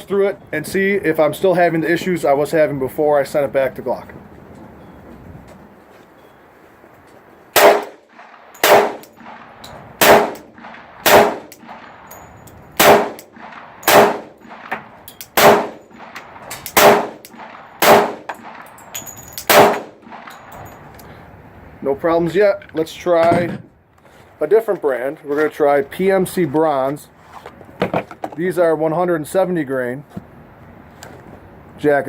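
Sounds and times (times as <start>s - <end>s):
pistol shots: 7.6s - 12.1s, 12.8s - 18.8s, 19.4s - 20.6s.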